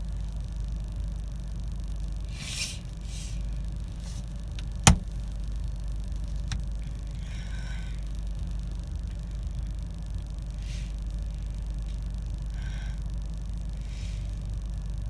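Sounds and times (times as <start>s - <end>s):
car cabin rumble: 3.8s - 6.8s
sharp click: 4.1s - 5.1s.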